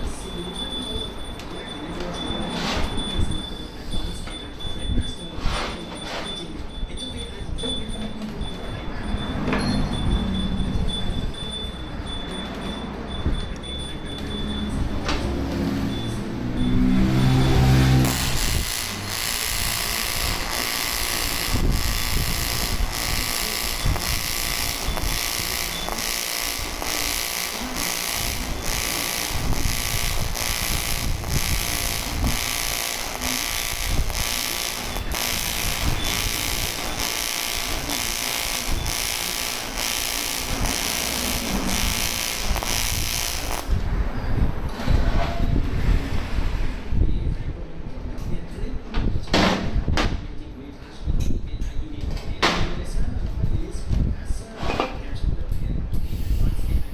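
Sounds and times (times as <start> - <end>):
welding arc pulsing buzz: 14.2 - 43.9.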